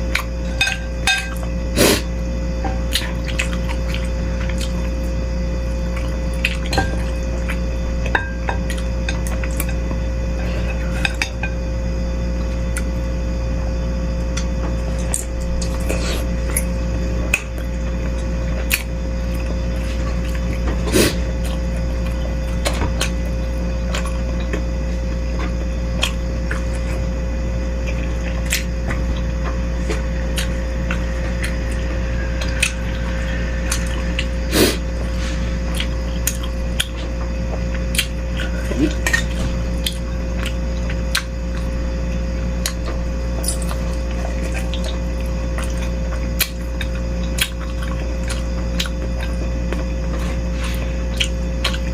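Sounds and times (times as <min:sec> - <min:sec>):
steady low hum: 0:00.0 - 0:51.9
spoon clinking against a bowl: 0:00.5 - 0:01.4.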